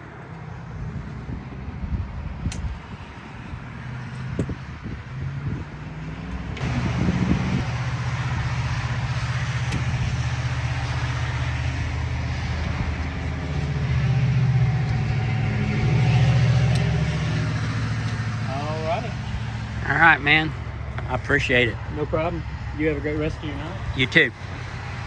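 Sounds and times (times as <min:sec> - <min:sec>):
van engine humming: 0:05.7 - 0:25.0
rushing noise: 0:06.6 - 0:22.9.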